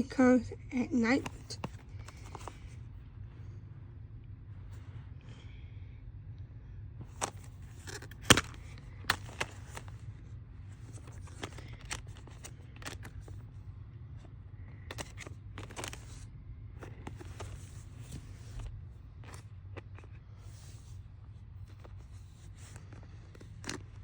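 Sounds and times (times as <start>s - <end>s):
plastic cases rustling and scraping: 1.0s - 3.0s, 7.0s - 13.6s, 14.2s - 24.0s
plastic cases clicking and tapping: 1.2s - 2.6s, 7.1s - 10.0s, 10.9s - 13.4s, 14.9s - 16.2s.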